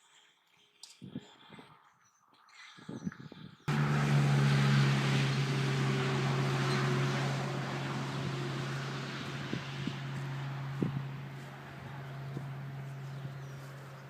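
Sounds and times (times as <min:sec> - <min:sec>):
engine humming steadily: 0:03.7 - 0:14.0.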